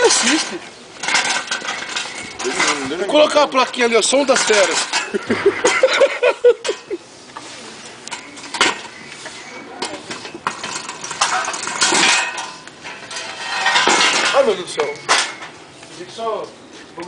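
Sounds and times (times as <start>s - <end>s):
rustling: 0.0s - 5.9s.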